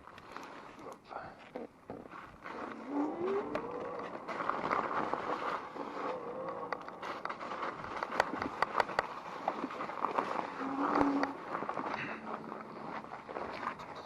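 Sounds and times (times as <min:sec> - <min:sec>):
electric bike rolling and rattling: 0:02.1 - 0:14.0.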